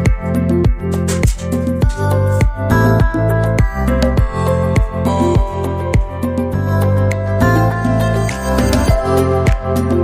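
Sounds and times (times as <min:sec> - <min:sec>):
background music with chords: 0:00.0 - 0:10.0.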